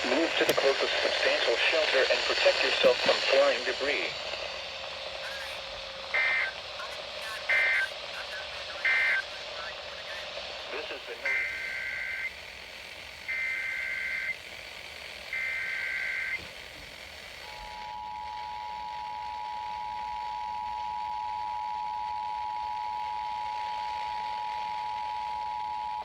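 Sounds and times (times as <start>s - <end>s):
screechy data-header tones: 5.2s - 9.3s, 11.2s - 12.4s, 13.2s - 14.4s, 15.3s - 16.4s.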